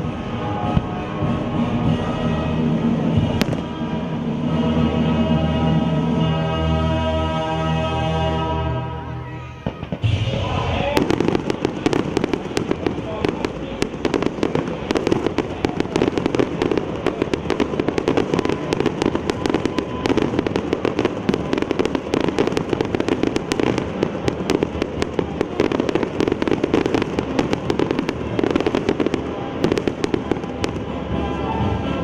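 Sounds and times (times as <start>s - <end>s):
fireworks bangs and crackling: 0.0s - 8.7s, 9.6s - 32.0s.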